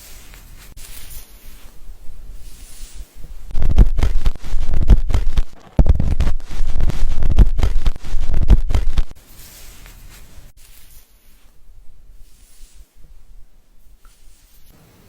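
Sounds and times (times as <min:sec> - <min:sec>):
hands scrubbing hair: 0:00.0 - 0:11.6.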